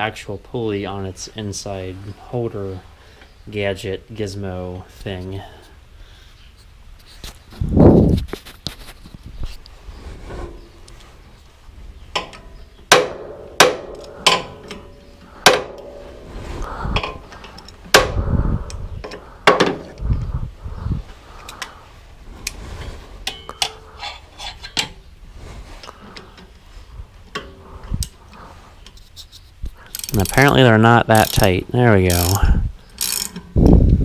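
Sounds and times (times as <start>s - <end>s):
tools clicking and knocking: 12.1s - 15.9s, 29.8s - 30.6s, 31.2s - 31.5s, 32.1s - 33.5s
sharp metallic clanks: 12.2s - 20.0s, 23.2s - 25.0s.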